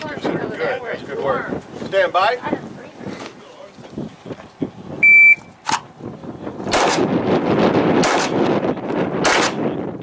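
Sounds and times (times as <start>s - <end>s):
shot timer beep: 5.0s - 5.5s
handgun shots: 6.7s - 7.1s, 8.0s - 8.4s, 9.2s - 9.7s.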